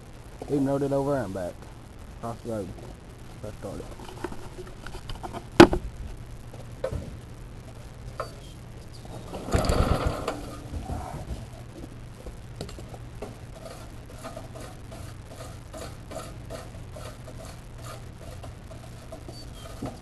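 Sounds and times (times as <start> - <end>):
small engine starting: 9.3 - 10.6.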